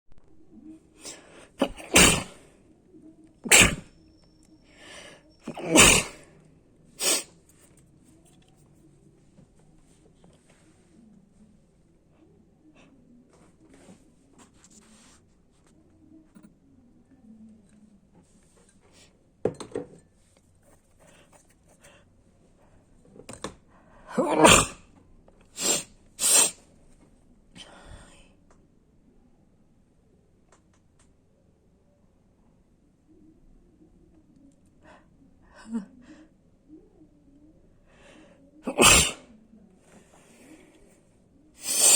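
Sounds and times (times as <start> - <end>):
person sneezing: 1.0 - 2.4, 3.4 - 3.8, 5.0 - 6.3, 7.0 - 7.3, 24.1 - 24.8, 25.6 - 26.6, 38.6 - 39.3, 41.6 - 41.9
soft breaths drawn in: 39.8 - 41.9.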